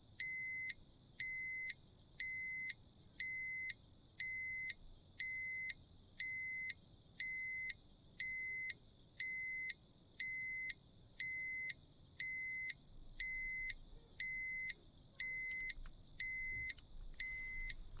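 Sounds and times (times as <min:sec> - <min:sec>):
electronic alarm beeps: 0:08.3 - 0:18.0.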